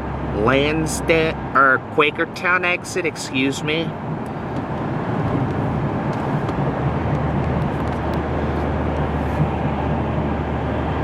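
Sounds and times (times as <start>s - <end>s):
tyre and road noise: 0.0s - 11.0s.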